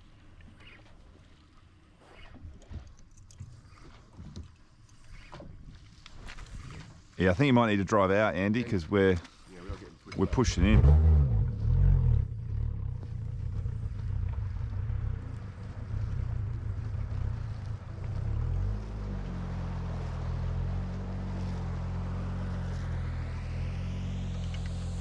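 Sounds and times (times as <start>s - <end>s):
boat engine humming: 7.0s - 25.0s.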